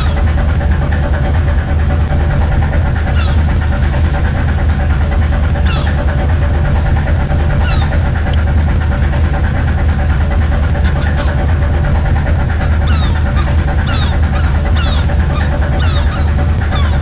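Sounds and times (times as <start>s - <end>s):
boat engine low drone: 0.0s - 17.0s.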